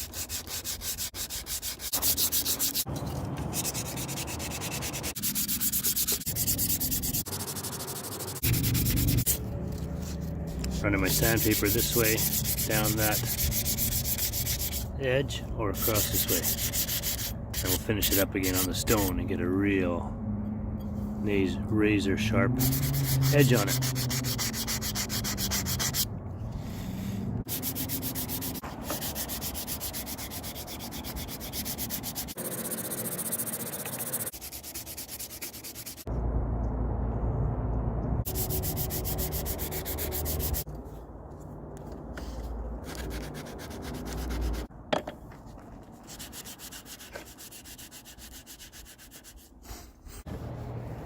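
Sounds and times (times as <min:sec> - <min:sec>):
sandpaper rubbing on metal: 0:00.0 - 0:02.9, 0:03.5 - 0:09.4, 0:10.0 - 0:15.0, 0:15.8 - 0:19.1, 0:22.6 - 0:26.1, 0:27.5 - 0:36.1, 0:38.3 - 0:40.7, 0:42.9 - 0:44.7, 0:46.0 - 0:50.0.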